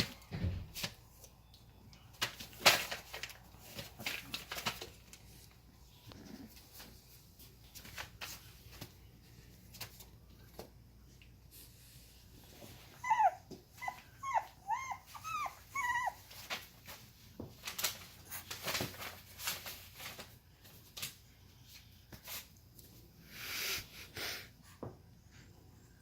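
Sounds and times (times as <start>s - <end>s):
rustling and scuffling: 0.0s - 23.2s
puppies whimpering: 12.9s - 16.3s.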